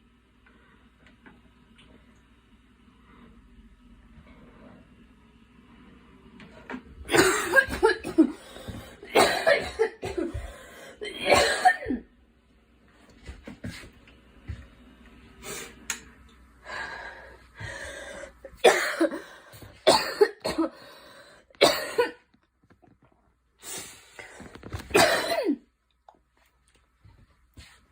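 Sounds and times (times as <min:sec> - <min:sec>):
girl coughing: 0:07.1 - 0:08.4, 0:09.0 - 0:12.0, 0:18.6 - 0:19.2, 0:19.8 - 0:20.8, 0:21.6 - 0:22.2, 0:24.9 - 0:25.6.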